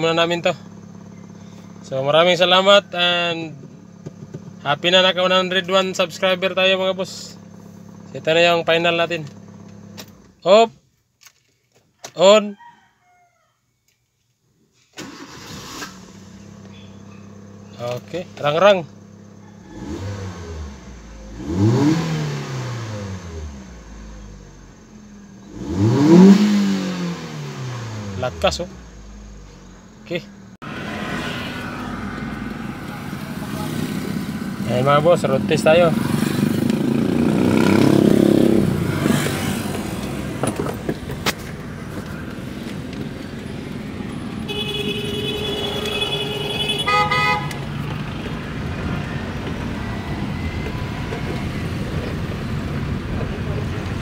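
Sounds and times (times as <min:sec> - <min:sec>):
car engine revving: 0:00.0 - 0:10.3, 0:15.0 - 0:54.0
car horn honking: 0:44.1 - 0:48.2.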